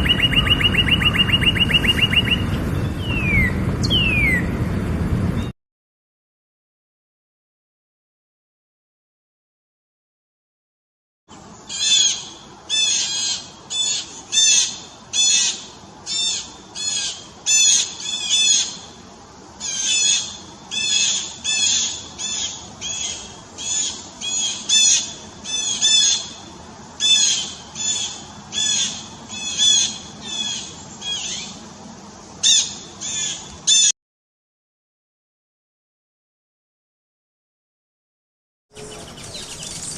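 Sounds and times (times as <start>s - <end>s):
bird harsh high-pitched calls: 0.0s - 4.5s, 11.6s - 19.0s, 19.6s - 31.6s, 32.4s - 33.9s, 38.7s - 39.9s.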